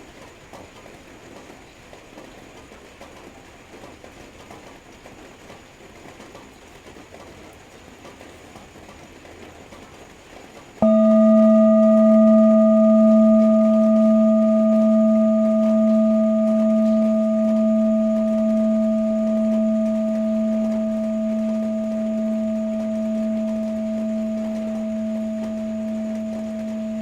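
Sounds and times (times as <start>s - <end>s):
singing bowl ringing: 10.8s - 27.0s.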